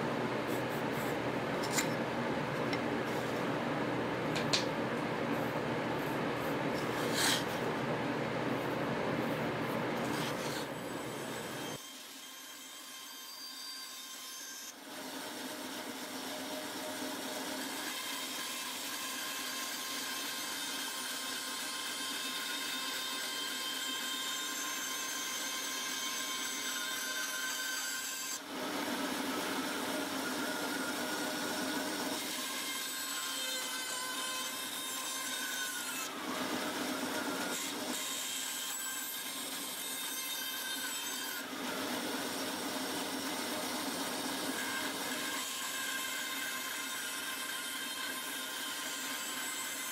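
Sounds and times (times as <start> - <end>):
woodworking power tool cutting wood: 10.1 - 49.9.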